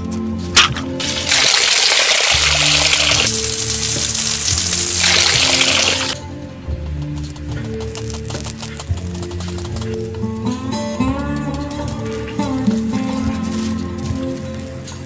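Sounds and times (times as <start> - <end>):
acoustic guitar music: 0.0 - 15.0
water pouring: 0.6 - 6.2.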